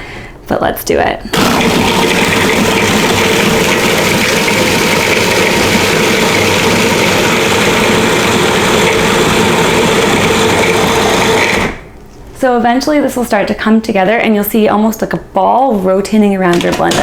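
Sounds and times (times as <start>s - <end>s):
blender running: 1.3s - 11.9s.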